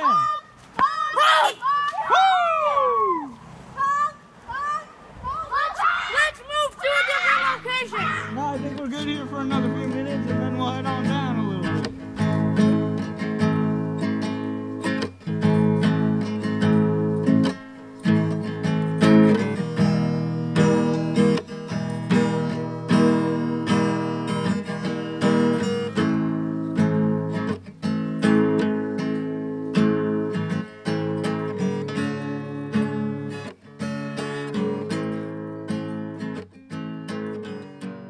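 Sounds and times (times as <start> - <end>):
acoustic guitar strumming chords: 7.6 - 38.0.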